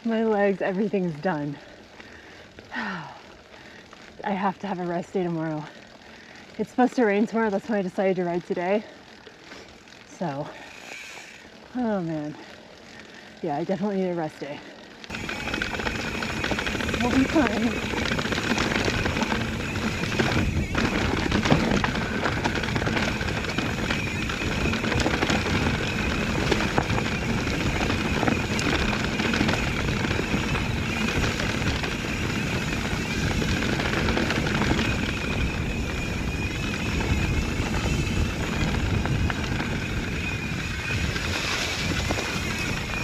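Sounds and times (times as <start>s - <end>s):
bike tyres on dirt trail: 0.0s - 43.0s
bike knocks and rattles: 15.1s - 43.0s
wind on microphone: 15.1s - 43.0s.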